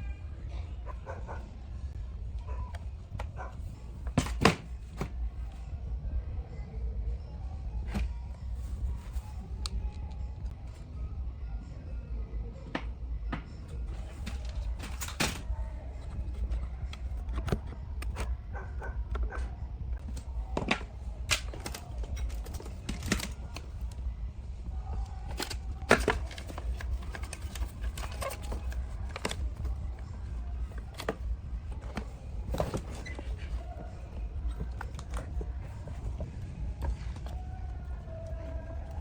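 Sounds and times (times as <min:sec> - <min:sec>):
steady low hum: 0:00.0 - 0:39.0
hand tools clicking and knocking: 0:13.4 - 0:24.0, 0:24.6 - 0:39.0.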